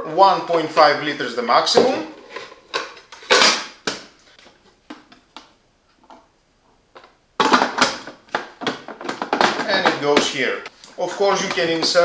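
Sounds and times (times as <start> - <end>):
plastic clicks and knocks: 7.0 - 10.4.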